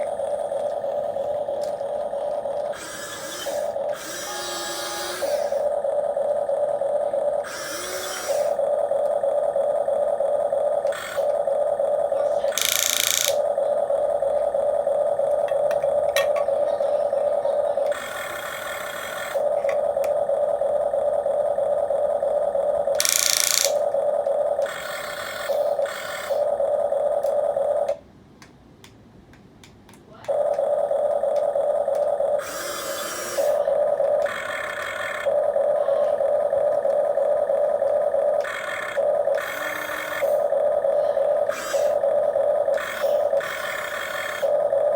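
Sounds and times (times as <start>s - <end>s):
electric gear motors whining: 0.0s - 28.0s, 30.2s - 44.9s
rasping gear noise: 31.4s - 44.9s.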